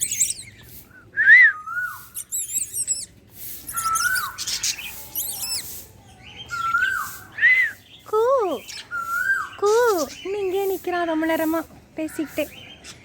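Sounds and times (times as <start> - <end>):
thin high bird chirps: 0.0 - 0.9, 1.6 - 10.8
bird call rising and falling: 0.0 - 10.3.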